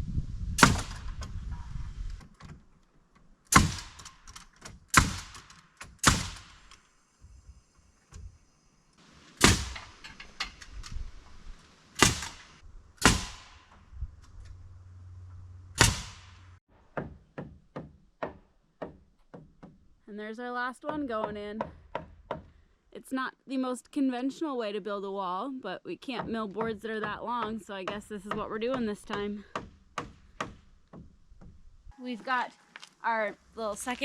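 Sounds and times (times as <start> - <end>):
hammer blows on nails: 12.0 - 13.8.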